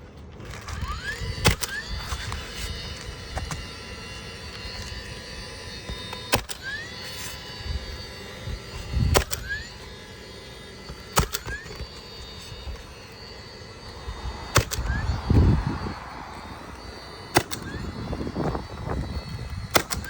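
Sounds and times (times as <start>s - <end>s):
nail gun firing: 0.5s - 20.0s
short rising chirp: 6.6s - 19.7s.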